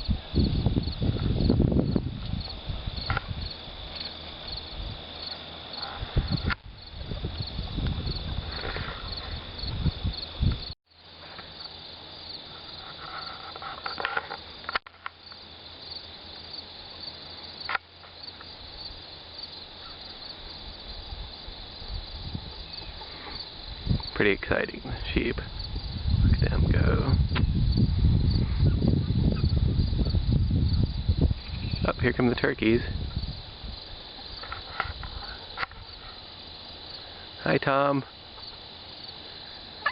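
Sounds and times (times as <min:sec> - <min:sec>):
wind rumble on microphone: 0:00.0 - 0:05.2, 0:05.8 - 0:10.8, 0:20.4 - 0:36.2
insects chirping: 0:00.0 - 0:39.9.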